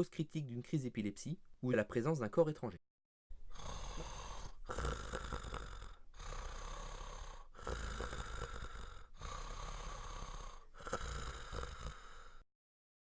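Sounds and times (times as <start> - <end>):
snoring-type breathing: 3.5 - 12.5.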